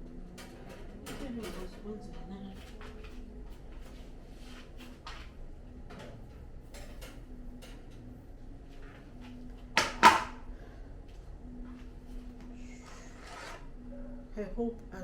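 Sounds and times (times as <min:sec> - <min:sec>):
clicks and knocks of kitchen items: 0:00.3 - 0:03.2, 0:09.8 - 0:10.4.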